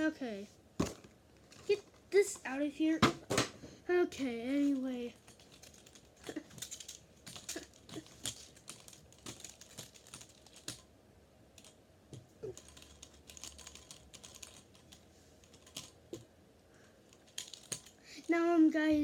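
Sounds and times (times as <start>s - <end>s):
plastic toys clicking and tapping: 4.7s - 10.9s, 11.6s - 16.3s, 17.1s - 18.3s.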